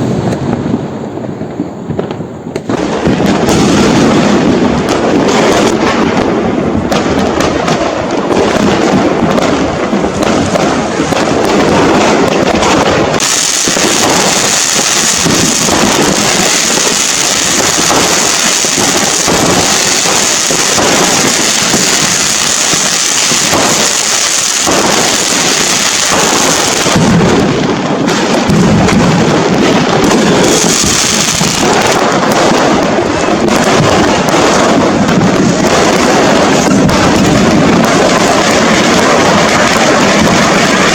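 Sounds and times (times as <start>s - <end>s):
bright hissing crackle: 13.1s - 27.3s.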